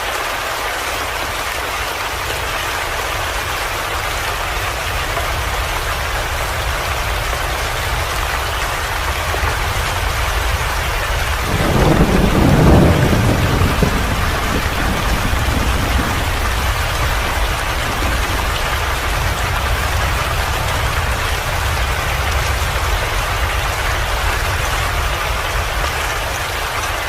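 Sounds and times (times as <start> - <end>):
rain falling: 0.0 - 27.0
low rumble: 5.1 - 24.2.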